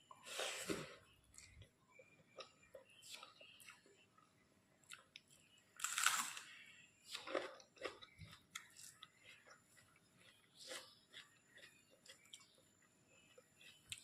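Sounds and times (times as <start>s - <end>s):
crunchy bite: 5.8s - 6.5s
chewing with mouth clicks: 7.1s - 14.0s.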